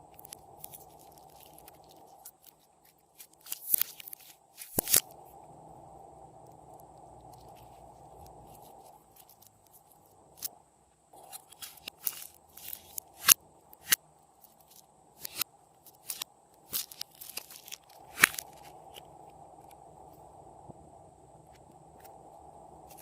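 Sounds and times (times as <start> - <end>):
slime popping and crackling: 0.1 - 5.1.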